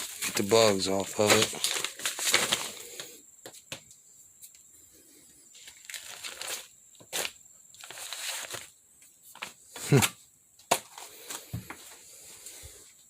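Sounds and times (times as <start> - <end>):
newspaper rustling and crinkling: 0.0 - 3.1, 5.5 - 12.1.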